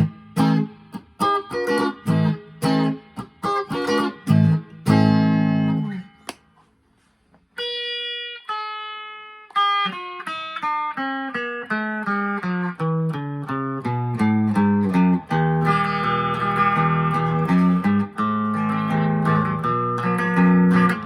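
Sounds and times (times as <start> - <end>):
clean electric guitar playing: 0.0 - 6.3, 7.6 - 21.0.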